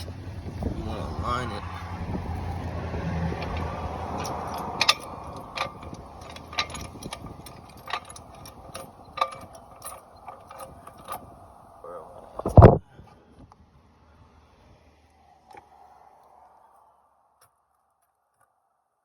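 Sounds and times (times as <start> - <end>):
car jack metallic clicks: 2.3 - 11.5.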